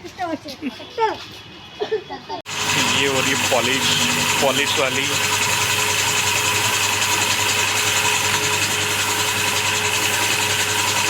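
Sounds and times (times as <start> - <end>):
machine motor humming: 2.5 - 11.0.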